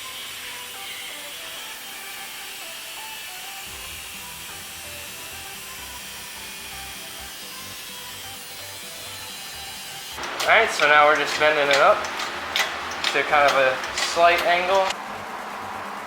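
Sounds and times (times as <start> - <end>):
low bass beat: 3.7 - 7.3.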